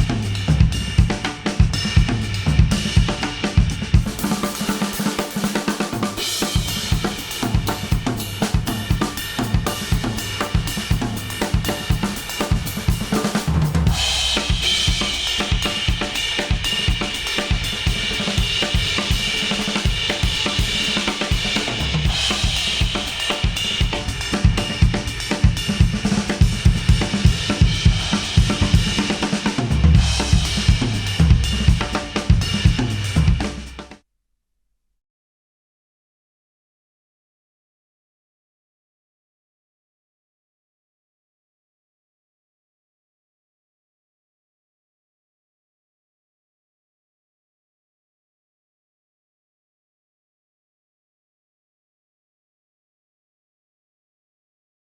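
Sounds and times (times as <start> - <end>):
instrumental music with drum beat: 0.0 - 34.0.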